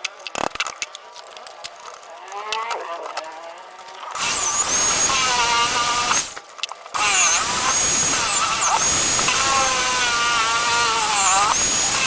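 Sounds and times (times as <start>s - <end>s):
power drill whining: 4.1s - 6.4s, 7.0s - 12.0s.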